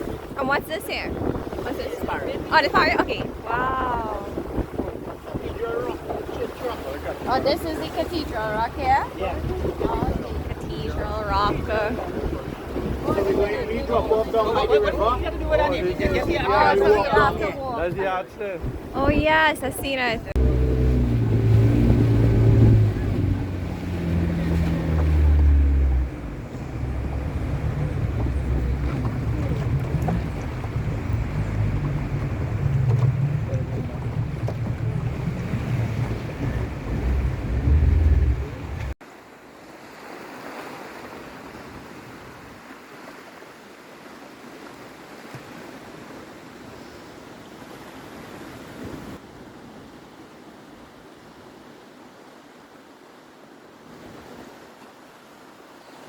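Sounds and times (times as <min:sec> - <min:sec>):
boat motor running: 0:00.0 - 0:39.0
wind buffeting microphone: 0:00.0 - 0:39.0
water noise: 0:00.0 - 0:56.0.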